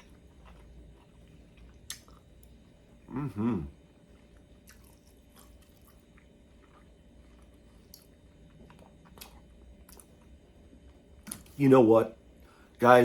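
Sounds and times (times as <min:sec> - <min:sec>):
person chewing food: 0:00.0 - 0:11.6
person humming approval: 0:03.1 - 0:03.7.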